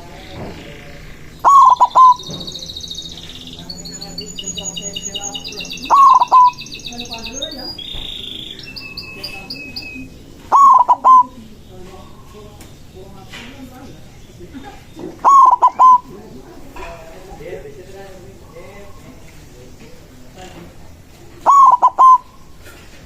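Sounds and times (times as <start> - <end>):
dove cooing: 0.0 - 12.3, 14.9 - 16.4, 21.4 - 22.5
small birds chirping: 0.0 - 23.0.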